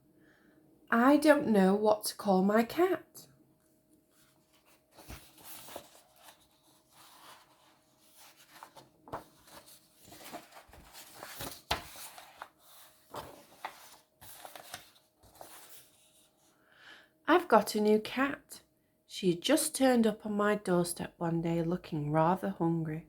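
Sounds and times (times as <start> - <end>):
book pages turning: 4.1 - 16.4
paper rustling: 4.1 - 16.4.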